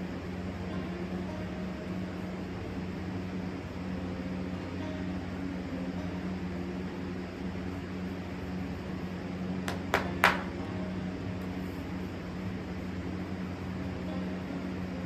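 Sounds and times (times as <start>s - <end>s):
electric fans humming: 0.0s - 15.0s
sharp knocks: 9.7s - 10.5s.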